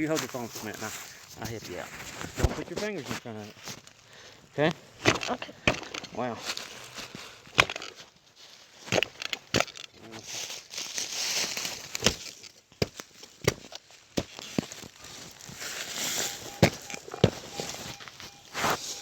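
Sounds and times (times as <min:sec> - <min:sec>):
dirt crunching and scraping: 0:00.0 - 0:19.0
shovel striking soil: 0:05.0 - 0:06.4, 0:07.5 - 0:08.0, 0:08.9 - 0:09.9, 0:11.9 - 0:19.0.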